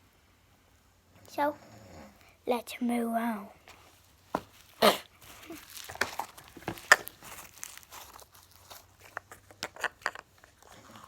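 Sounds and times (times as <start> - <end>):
plastic packaging crinkling: 3.7 - 11.0.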